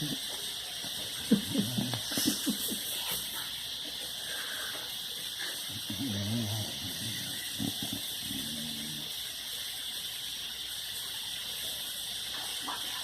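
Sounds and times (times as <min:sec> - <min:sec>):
steady hiss: 0:00.0 - 0:13.0
dog snoring: 0:01.3 - 0:02.3, 0:05.5 - 0:09.2.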